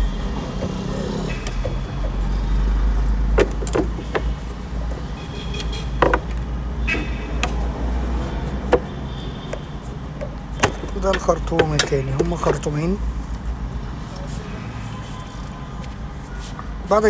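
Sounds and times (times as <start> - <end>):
sharp knocks: 3.0 - 7.7, 8.6 - 12.8
metal tools clicking and clinking: 3.3 - 5.1, 10.2 - 12.8.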